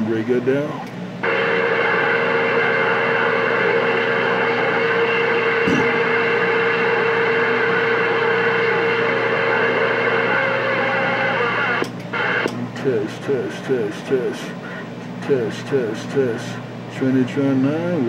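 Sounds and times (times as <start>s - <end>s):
radio receiver hissing: 1.2s - 12.6s.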